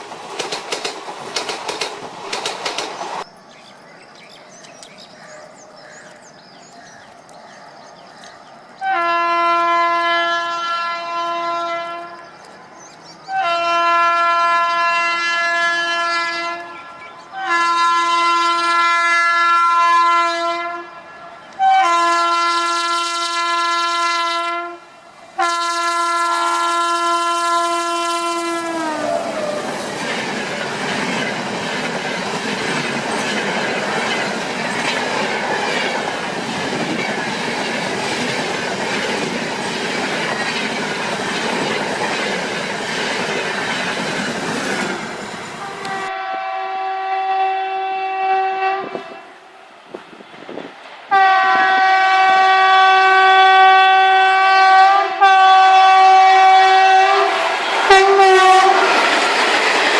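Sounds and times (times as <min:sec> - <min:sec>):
train rumbling on track: 0:00.0 - 0:09.0, 0:23.3 - 0:46.3, 0:48.7 - 0:59.9
locomotive horn blasts: 0:08.8 - 0:12.2, 0:13.3 - 0:29.6, 0:45.6 - 0:49.4, 0:51.1 - 0:58.8.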